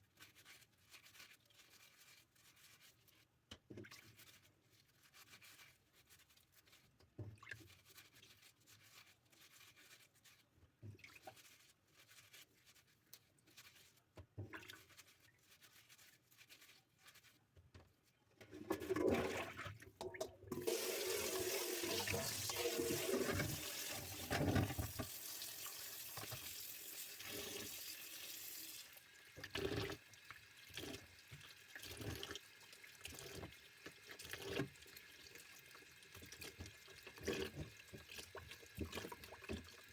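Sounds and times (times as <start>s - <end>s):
items knocking while rinsed: 20.0s - 25.2s
tap running into a sink: 20.0s - 27.9s.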